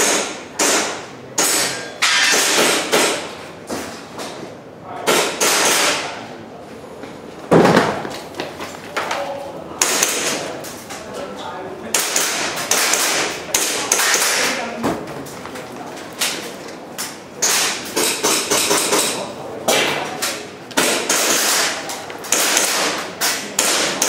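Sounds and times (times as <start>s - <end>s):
airsoft pistol shots: 20.8s - 24.0s.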